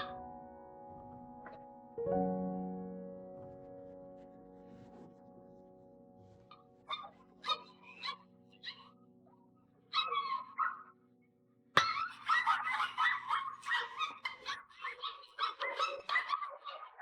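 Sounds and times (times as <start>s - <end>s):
dog whining and yipping: 6.9s - 8.9s, 9.9s - 10.8s, 12.0s - 17.0s.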